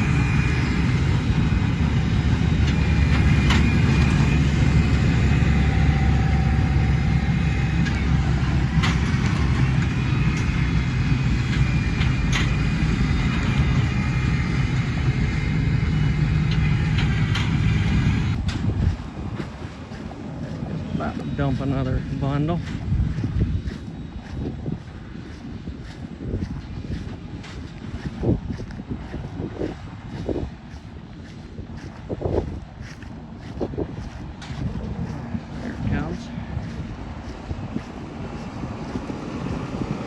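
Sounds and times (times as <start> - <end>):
hay baler clacks: 0.0 - 40.0
tractor engine drone: 0.0 - 40.0.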